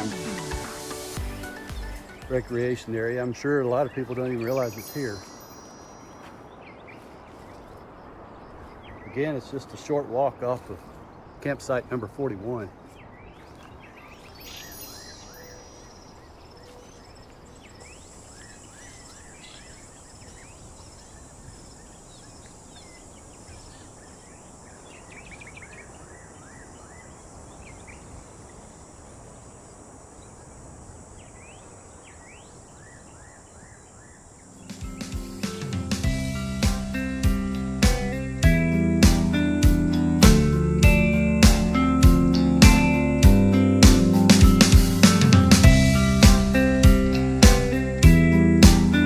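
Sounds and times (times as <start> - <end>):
guitar music: 0.0 - 2.8, 34.7 - 49.0
high insect drone: 0.0 - 8.7, 14.0 - 49.0
bird chirps and calls: 0.0 - 28.7.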